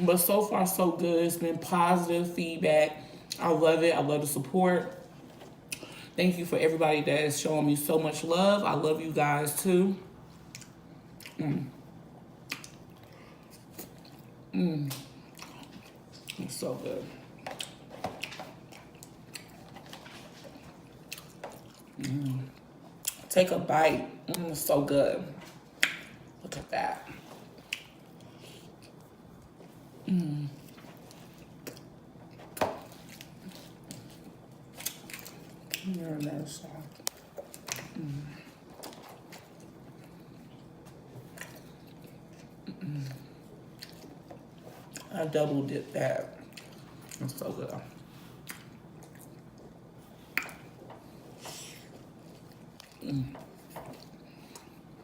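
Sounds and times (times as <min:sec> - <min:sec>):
person chewing with lip-smacking: 0:10.4 - 0:16.5, 0:17.3 - 0:23.3, 0:27.2 - 0:45.1, 0:46.4 - 0:47.3, 0:47.9 - 0:55.0.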